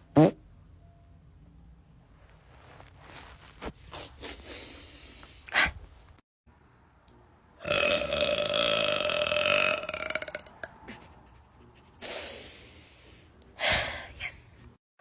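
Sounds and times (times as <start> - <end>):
long burp: 7.6 - 10.6.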